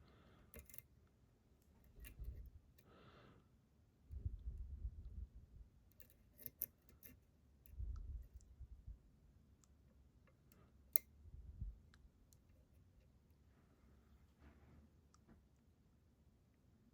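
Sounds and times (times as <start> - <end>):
lock being handled bumps: 0.6 - 0.8
lock pick clicking pins: 0.6 - 0.8, 5.9 - 7.2.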